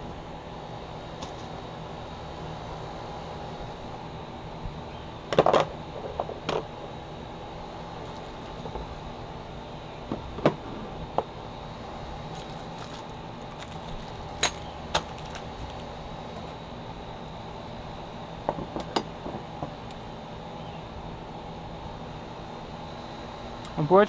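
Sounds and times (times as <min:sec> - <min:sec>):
steady background hum: 0:00.0 - 0:24.0
metal tools clinking: 0:12.3 - 0:15.8.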